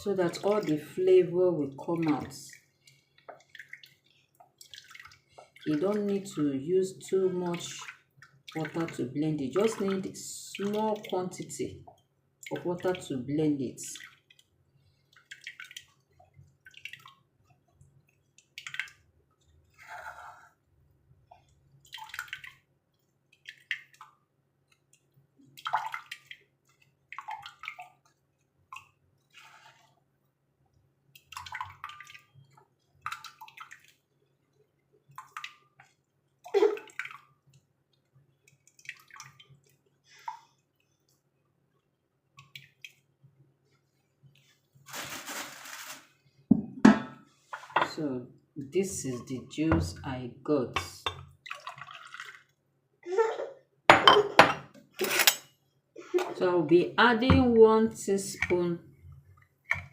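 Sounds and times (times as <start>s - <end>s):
liquid splashing and dripping: 0.0s - 13.2s, 13.8s - 19.8s, 21.2s - 47.9s, 50.8s - 52.7s, 58.2s - 59.9s.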